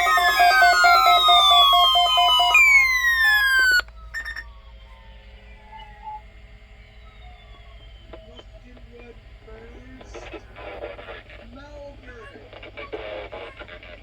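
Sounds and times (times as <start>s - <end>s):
rapid electronic beeping: 0.0s - 4.4s
downward sliding siren tone: 0.0s - 6.2s.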